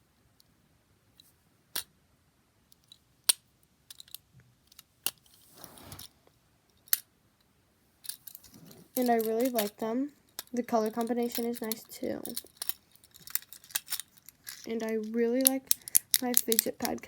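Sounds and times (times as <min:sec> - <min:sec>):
sliding rub: 0:05.3 - 0:06.2.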